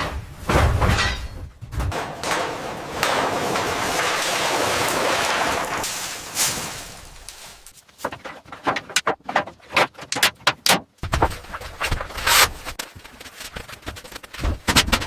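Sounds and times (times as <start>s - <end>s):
clatter of sharp knocks: 8.0s - 12.9s, 13.6s - 15.0s.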